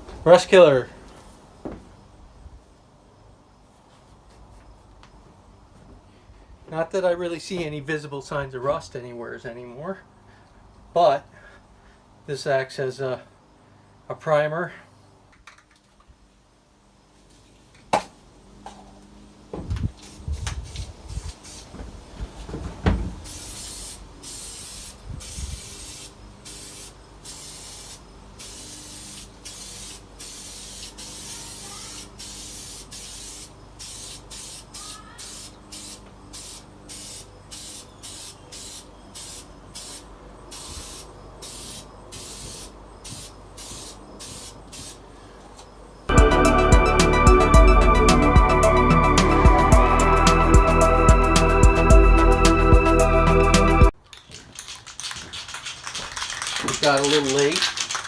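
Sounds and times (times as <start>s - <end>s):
spray can hissing bursts: 20.0s - 21.8s, 23.2s - 45.0s, 55.4s - 58.0s.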